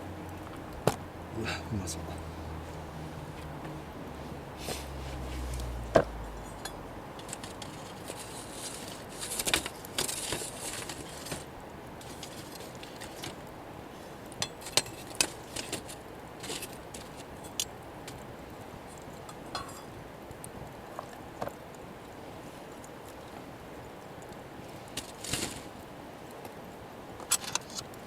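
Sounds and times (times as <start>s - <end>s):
camp cookware clinking: 6.3s - 13.5s, 14.3s - 20.1s.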